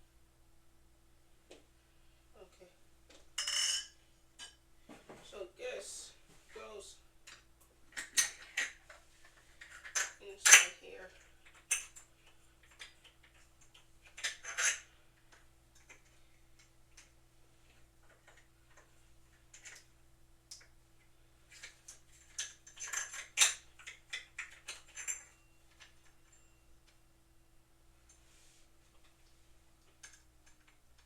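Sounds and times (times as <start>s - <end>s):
faint steady hum: 0.0s - 31.0s
objects clicking and clattering: 7.3s - 17.1s, 18.0s - 19.9s, 21.5s - 26.6s.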